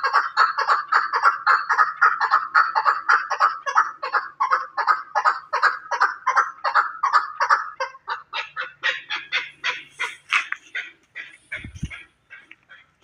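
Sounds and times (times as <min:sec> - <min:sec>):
partridge clucking call: 0:00.0 - 0:13.0.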